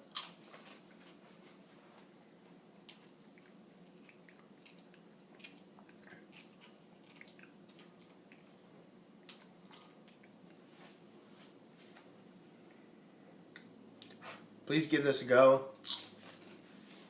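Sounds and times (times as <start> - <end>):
low steady hum: 0.0 - 17.0
person chewing crisp chips: 0.1 - 0.8, 2.8 - 10.4, 15.8 - 16.2.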